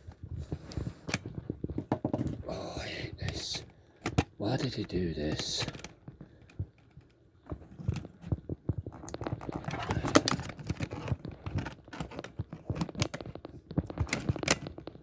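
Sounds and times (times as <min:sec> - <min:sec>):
plastic clips clicking and snapping: 0:04.0 - 0:07.2, 0:09.0 - 0:15.0.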